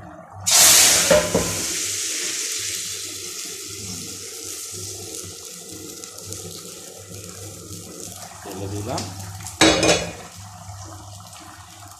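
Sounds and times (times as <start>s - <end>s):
hot oil hissing in curry: 0.5s - 11.9s
pan knocking: 9.6s - 10.3s.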